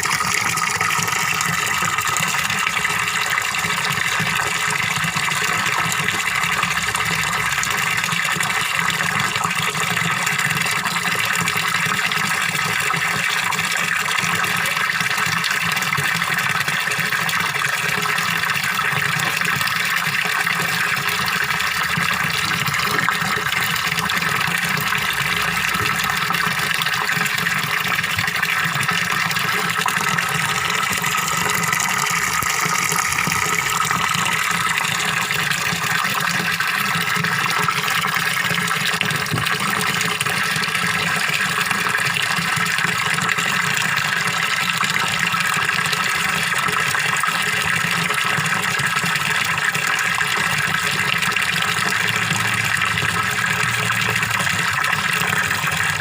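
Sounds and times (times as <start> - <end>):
small waterfall splashing: 0.0 - 56.0.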